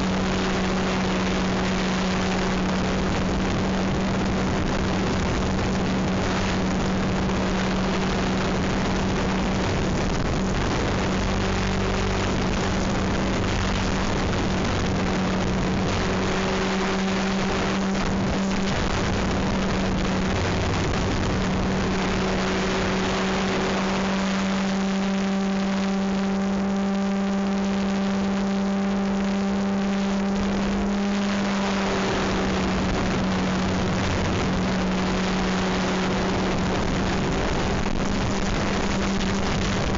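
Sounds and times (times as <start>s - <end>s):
rush of air: 30.3s - 39.9s.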